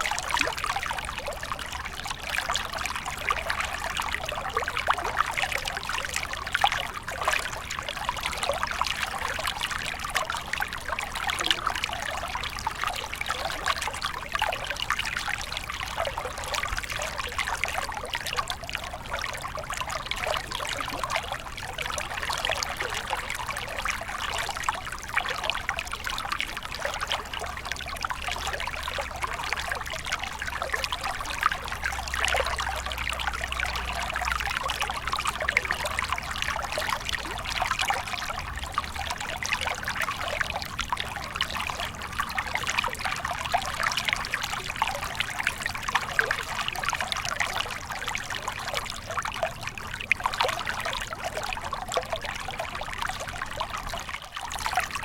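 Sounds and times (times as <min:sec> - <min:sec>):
stream trickling and babbling: 0:00.0 - 0:55.0.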